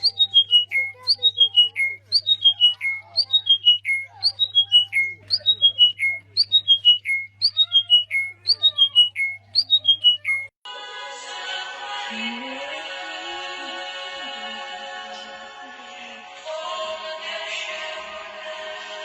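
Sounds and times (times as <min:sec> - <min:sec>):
high bird-like call: 0:00.0 - 0:10.5.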